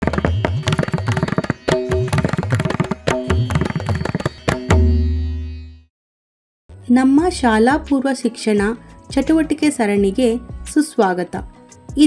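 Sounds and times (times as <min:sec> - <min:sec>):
fast hand-drum rhythm: 0:00.0 - 0:05.0.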